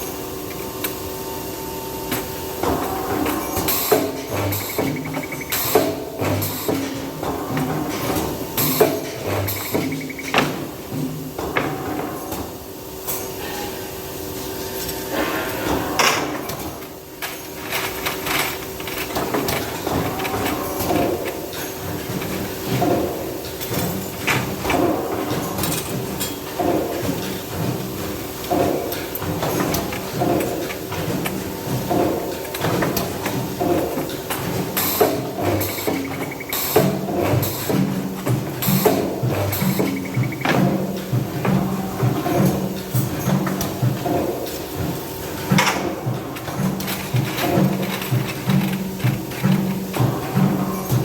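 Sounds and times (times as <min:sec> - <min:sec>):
steady machine hum: 0:00.0 - 0:51.0
metal parts clanking: 0:02.7 - 0:10.6, 0:16.2 - 0:22.9, 0:28.9 - 0:43.7, 0:45.6 - 0:51.0.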